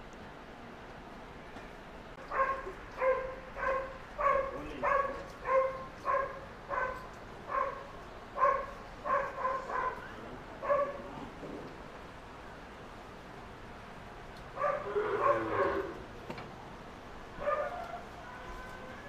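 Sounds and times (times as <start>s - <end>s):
dog barking: 2.3s - 11.0s, 14.6s - 15.9s, 17.4s - 18.5s.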